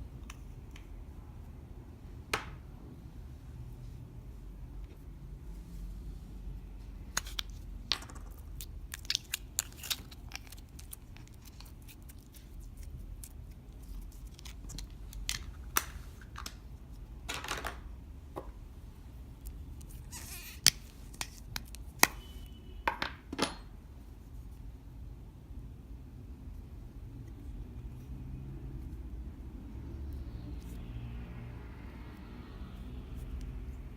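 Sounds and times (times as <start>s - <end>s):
low room hum: 0.0s - 33.9s
slime squishing and scraping: 7.2s - 15.6s.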